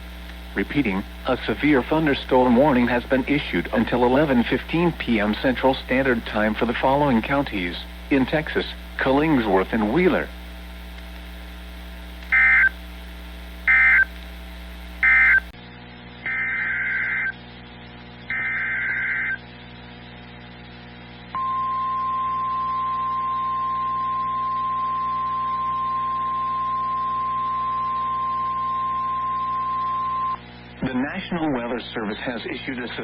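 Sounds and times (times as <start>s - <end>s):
screeching digital data bursts: 12.3s - 12.8s, 13.7s - 14.1s, 15.0s - 15.5s, 16.2s - 17.4s, 18.3s - 19.4s
steady warning alarm tone: 12.3s - 12.8s, 13.7s - 14.1s, 15.0s - 15.5s.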